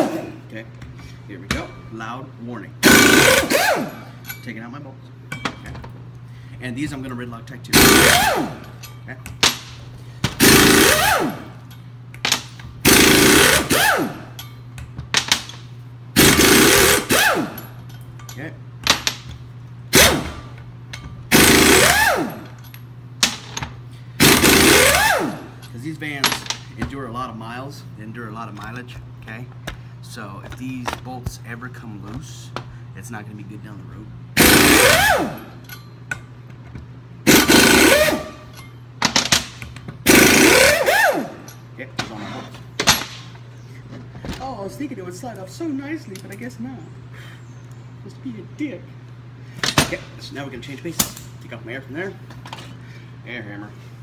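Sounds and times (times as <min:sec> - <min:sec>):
pneumatic impact wrench hammering: 0:00.0 - 0:00.5, 0:02.8 - 0:04.4, 0:07.7 - 0:18.0, 0:18.8 - 0:26.7, 0:34.4 - 0:36.3, 0:37.2 - 0:43.4
air motor whine: 0:00.0 - 0:54.0.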